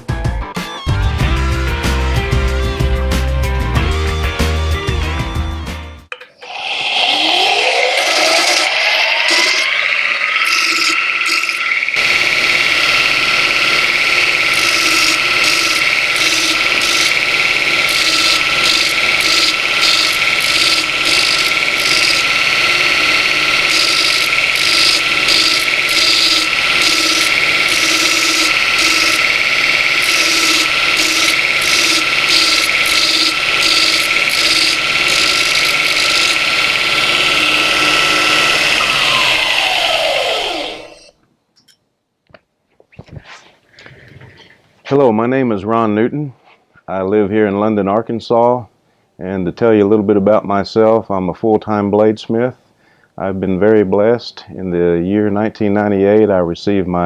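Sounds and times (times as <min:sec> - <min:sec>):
rasping grinding: 0:06.4 - 0:41.1
belt grinder motor whine: 0:06.4 - 0:41.2.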